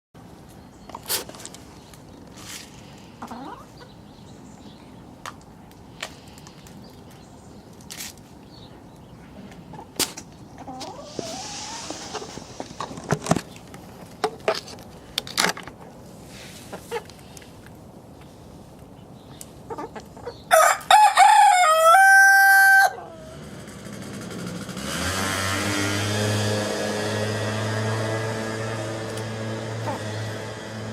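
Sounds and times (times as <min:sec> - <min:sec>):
rooster crowing: 0:20.5 - 0:23.4.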